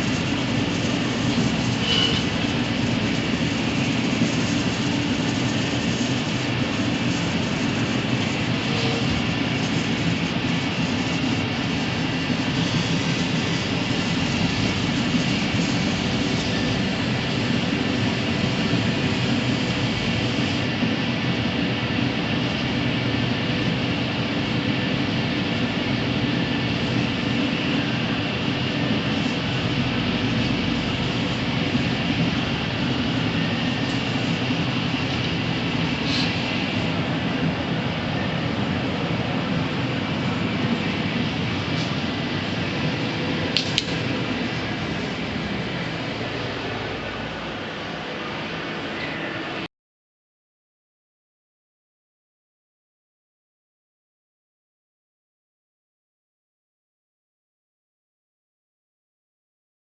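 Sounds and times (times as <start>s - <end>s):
bandsaw running: 0.0s - 20.4s.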